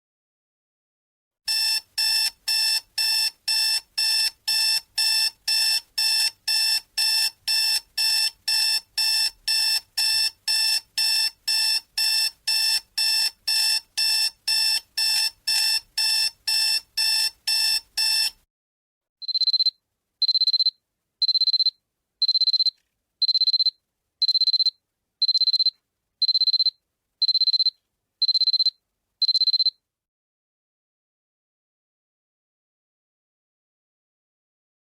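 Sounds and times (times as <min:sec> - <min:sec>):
fast buzzy alarm beeps: 0:01.5 - 0:18.4, 0:19.2 - 0:29.7
high pure alarm beeps: 0:01.5 - 0:18.4, 0:19.2 - 0:29.7.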